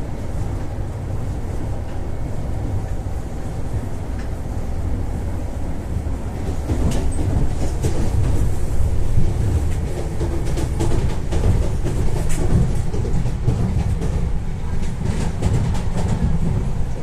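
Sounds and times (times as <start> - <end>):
train low rumble: 0.0 - 17.0
wheels clicking on track: 6.4 - 17.0.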